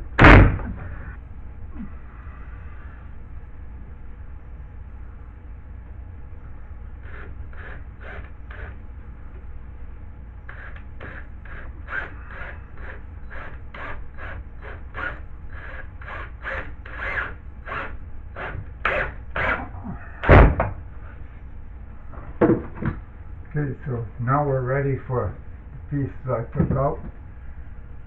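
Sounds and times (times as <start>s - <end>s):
loud knock: 0.2s - 0.9s, 20.2s - 20.8s
hand tool rasping on wood: 7.1s - 8.7s, 10.5s - 19.8s.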